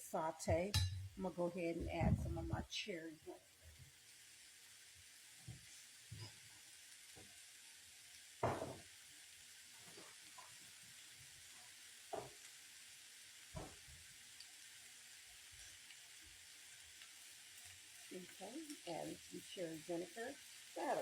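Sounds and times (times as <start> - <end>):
vegetables sizzling in frying pan: 0.1 - 21.0.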